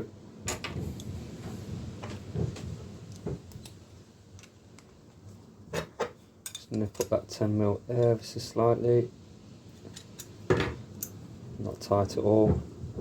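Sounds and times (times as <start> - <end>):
light metal tool clicks and knocks: 6.0 - 7.2.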